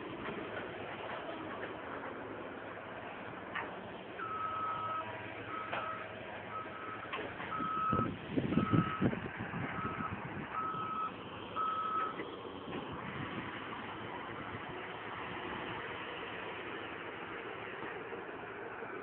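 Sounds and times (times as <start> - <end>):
excavator rumbling: 0.0 - 19.0
excavator travel alarm beeping: 4.2 - 9.1, 9.8 - 12.2.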